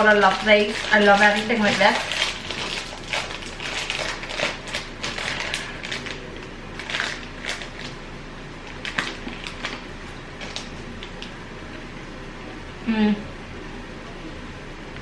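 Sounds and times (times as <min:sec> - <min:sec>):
snack packet crinkling: 0:00.0 - 0:08.0, 0:08.6 - 0:11.3.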